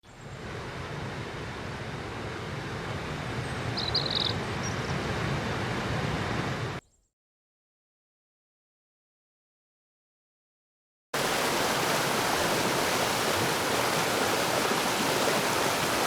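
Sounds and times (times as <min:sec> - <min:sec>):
bird chirp: 0:03.4 - 0:05.0, 0:06.8 - 0:07.2
waterfall rushing: 0:11.2 - 0:16.0.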